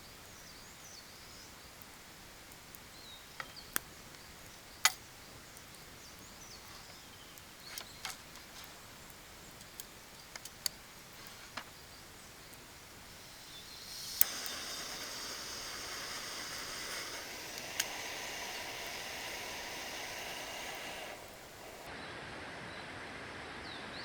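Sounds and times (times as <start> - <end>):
faint steady hiss: 0.0 - 24.0
faint bird chirps: 2.8 - 22.9
sharp clicks: 13.7 - 21.9.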